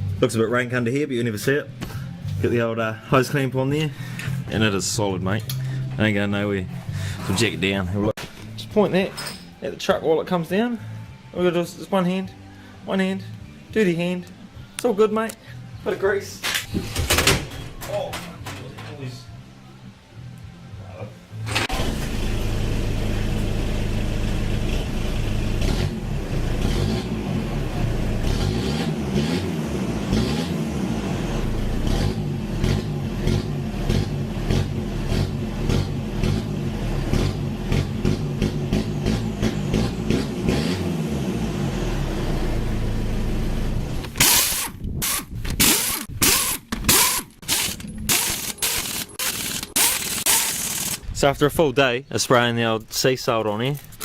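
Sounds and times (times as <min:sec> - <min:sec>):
diesel engine revving: 0:21.4 - 0:51.0.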